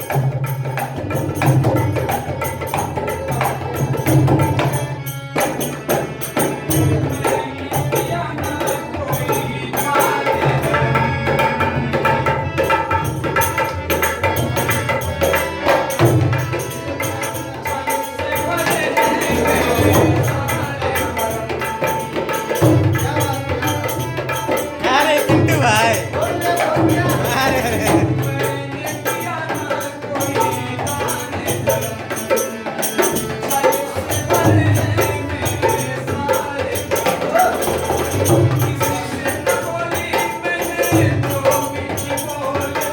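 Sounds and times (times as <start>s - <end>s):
hand drums: 0.0s - 42.9s
person singing: 16.6s - 42.9s.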